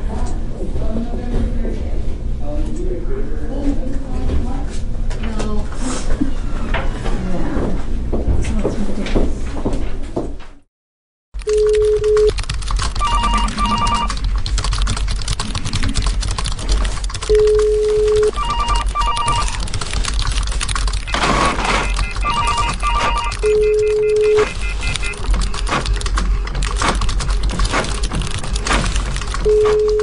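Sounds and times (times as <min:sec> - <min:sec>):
low background hum: 0:00.0 - 0:10.6, 0:11.4 - 0:30.0
keyboard typing: 0:11.4 - 0:30.0
telephone ringing: 0:11.5 - 0:12.3, 0:13.0 - 0:14.1, 0:17.3 - 0:19.6, 0:21.1 - 0:25.3, 0:29.4 - 0:30.0
low steady beep: 0:21.1 - 0:25.2, 0:29.4 - 0:30.0.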